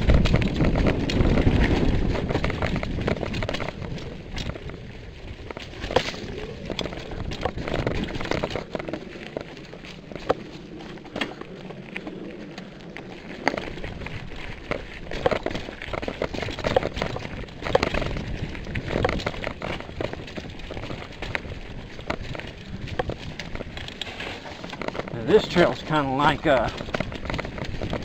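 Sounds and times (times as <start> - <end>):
bike clacks and rattles: 0.0 - 28.0
tyres crunching over dirt: 0.0 - 28.0.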